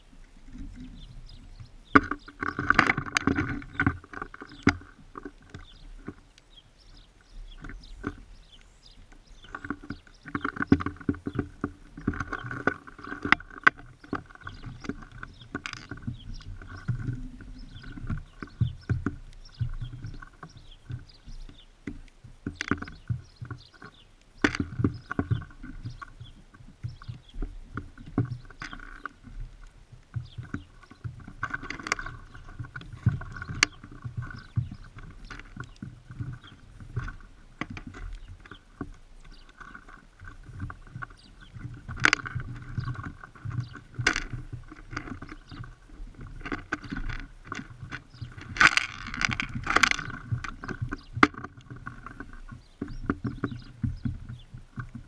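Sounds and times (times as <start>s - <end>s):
birds pecking at seed feeder: 0.0s - 55.0s.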